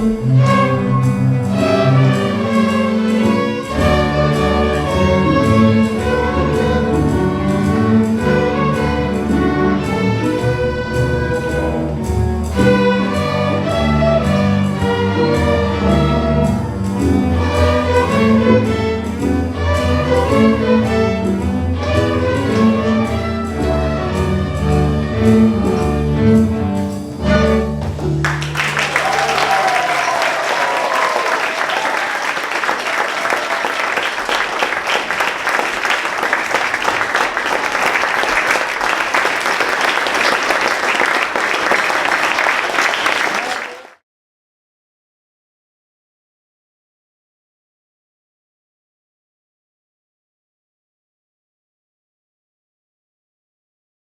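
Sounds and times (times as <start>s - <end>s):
string orchestra playing: 0.0s - 30.1s.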